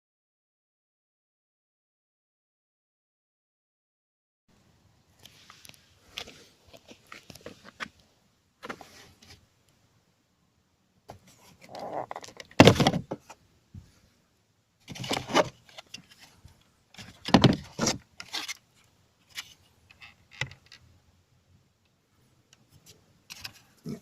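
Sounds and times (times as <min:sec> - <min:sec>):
clattering rustling handling noise: 0:14.8 - 0:20.7.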